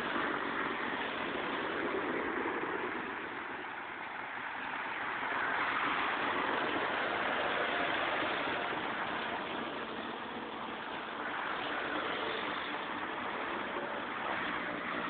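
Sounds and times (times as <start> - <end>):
pipe-wrapping machine whirring: 4.6 - 15.0.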